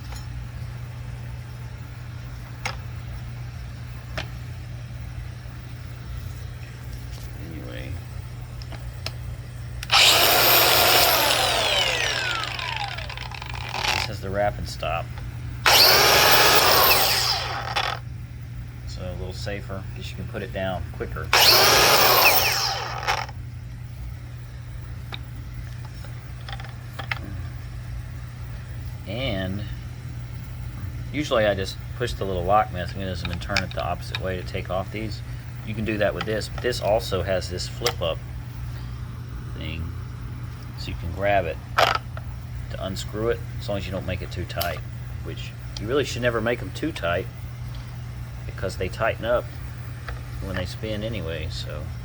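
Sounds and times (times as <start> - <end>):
steady low hum: 0.0 - 52.0
angle grinder spinning down: 9.8 - 14.1, 15.7 - 18.0, 21.3 - 23.3
sharp clicks: 9.8 - 14.1.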